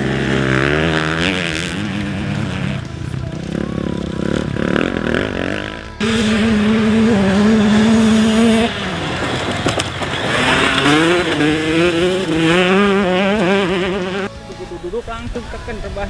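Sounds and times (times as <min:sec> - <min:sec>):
motorcycle engine revving: 0:00.0 - 0:14.8.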